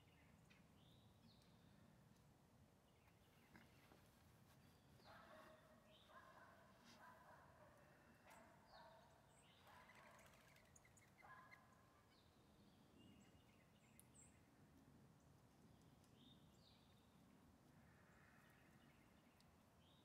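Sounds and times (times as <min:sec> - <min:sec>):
outdoor background hiss: 0:00.0 - 0:09.7, 0:10.4 - 0:20.0
faint bird chirps: 0:03.1 - 0:12.4.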